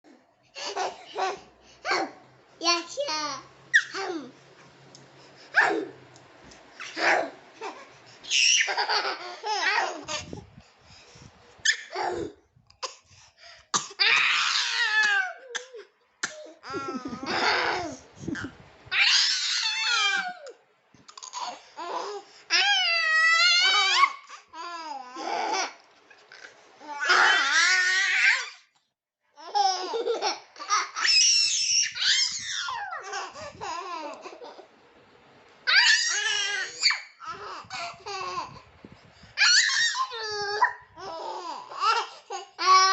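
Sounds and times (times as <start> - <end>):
small child laughing: 6.9 - 10.4, 16.4 - 19.2.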